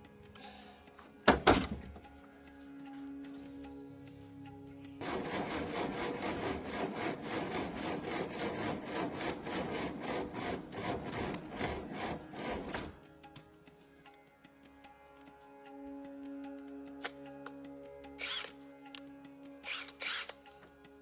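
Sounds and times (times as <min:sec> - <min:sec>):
hand tool scraping a surface: 0:05.0 - 0:12.7.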